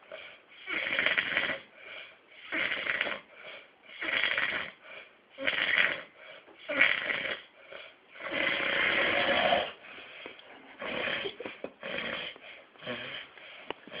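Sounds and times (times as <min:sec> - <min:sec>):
person snoring: 0:00.1 - 0:01.7, 0:02.4 - 0:03.3, 0:03.9 - 0:04.8, 0:05.4 - 0:09.8, 0:10.8 - 0:14.0.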